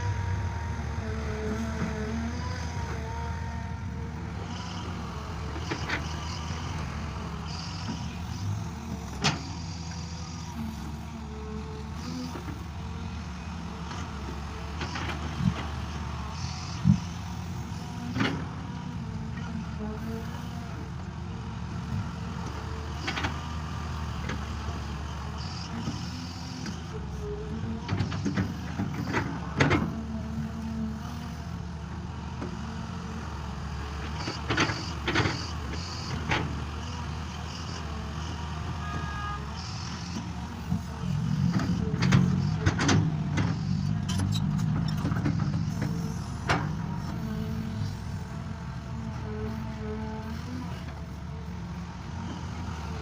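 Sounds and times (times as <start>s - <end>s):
farm machine engine running: 0.0s - 53.0s.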